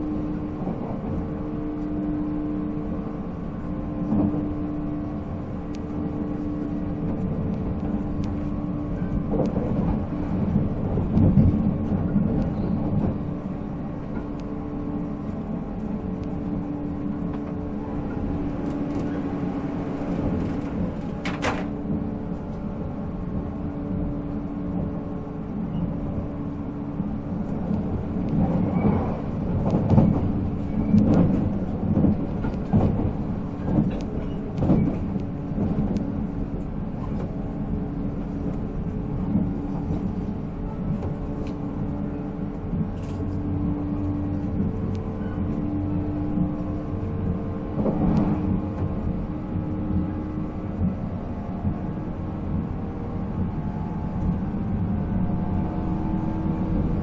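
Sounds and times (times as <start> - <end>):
wheels rumbling on rails: 0.0 - 57.0
rail-joint clatter: 5.6 - 22.8, 25.4 - 46.6, 47.3 - 49.4.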